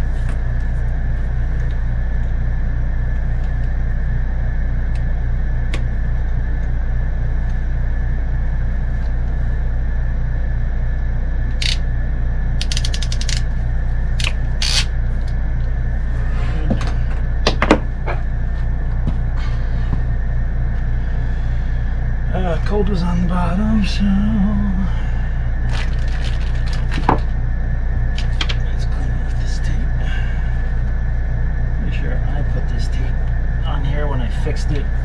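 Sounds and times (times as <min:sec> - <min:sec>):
low hum: 0:00.0 - 0:35.0
rapid clicks: 0:11.6 - 0:11.8, 0:12.6 - 0:13.5
tools clicking and knocking: 0:12.6 - 0:13.5, 0:14.2 - 0:14.9.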